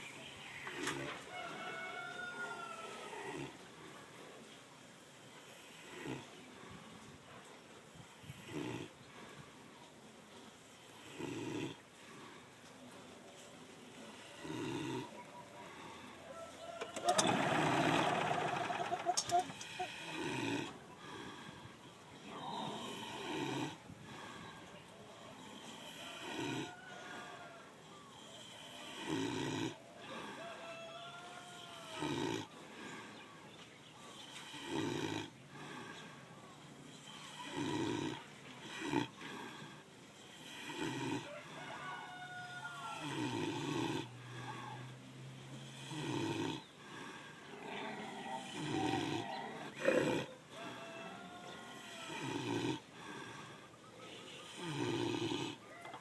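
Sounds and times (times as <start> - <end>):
pig snoring: 3.0 - 3.6, 5.4 - 6.8, 8.0 - 9.4, 10.8 - 12.4, 13.9 - 16.1, 16.9 - 24.6, 25.2 - 27.2, 27.8 - 30.4, 31.5 - 33.1, 34.0 - 41.5, 42.9 - 50.8, 51.5 - 55.7.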